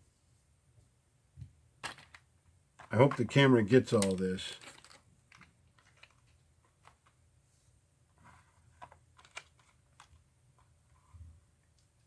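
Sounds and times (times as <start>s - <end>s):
faint clicks of small objects: 1.8s - 7.2s.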